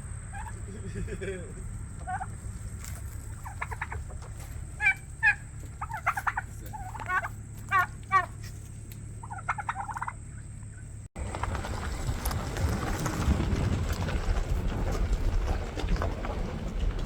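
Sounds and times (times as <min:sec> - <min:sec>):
turkey gobbling: 0:00.0 - 0:11.1
low rumbling noise: 0:00.0 - 0:17.0.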